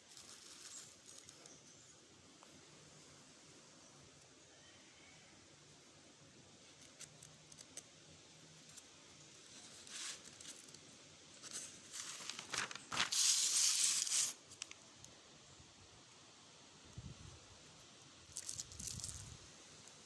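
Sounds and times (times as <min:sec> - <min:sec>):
crinkling and rustling handling: 0:00.0 - 0:01.6, 0:08.6 - 0:14.9.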